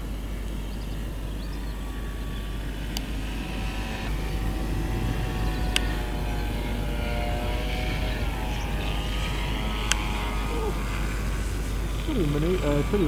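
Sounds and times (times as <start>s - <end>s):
model plane motor whine: 0.0s - 13.0s
wind noise: 0.0s - 13.0s
sharp clicks: 5.6s - 6.0s.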